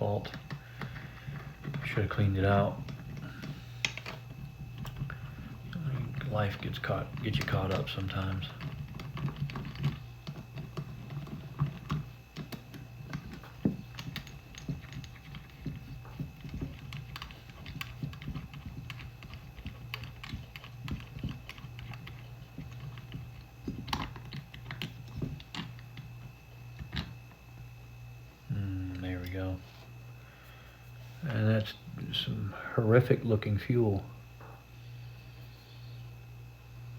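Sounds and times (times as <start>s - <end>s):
steady low hum: 0.0s - 36.9s
tools and metal parts clicking: 6.2s - 25.8s.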